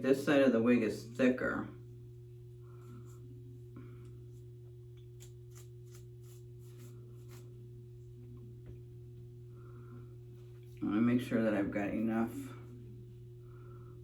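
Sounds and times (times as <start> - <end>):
low electrical hum: 0.0 - 14.0
brushing and rustling hair: 2.2 - 7.8.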